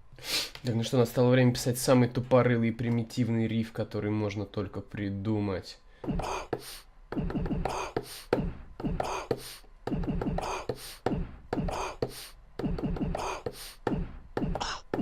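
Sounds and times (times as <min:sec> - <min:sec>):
beat of sampled coughs and sniffs: 0:06.1 - 0:15.0.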